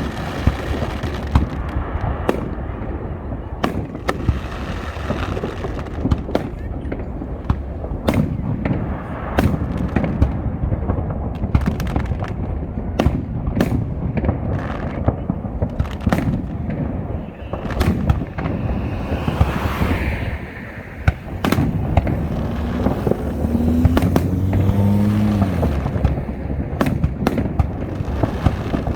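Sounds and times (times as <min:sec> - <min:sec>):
fireworks bangs: 0:00.0 - 0:28.9
low rumble of explosions: 0:00.0 - 0:28.9
hissing crackle: 0:14.8 - 0:28.9.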